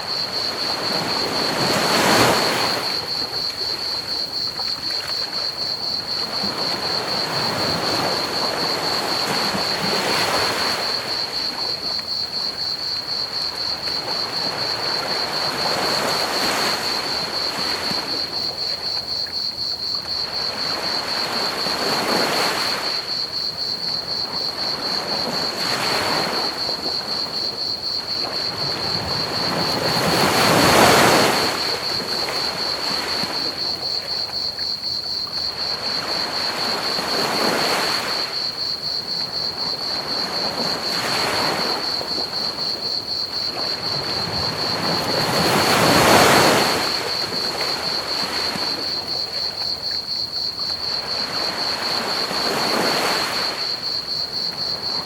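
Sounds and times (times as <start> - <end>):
ocean waves breaking on beach: 0.0 - 11.8, 23.8 - 34.2, 35.5 - 49.8, 50.5 - 55.0
crickets chirping: 0.0 - 55.0.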